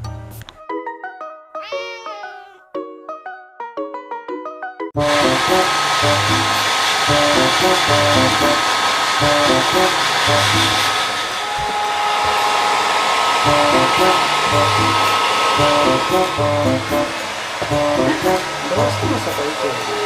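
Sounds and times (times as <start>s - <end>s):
background music: 0.0s - 12.0s, 13.5s - 19.8s
hair dryer blowing: 5.0s - 20.0s.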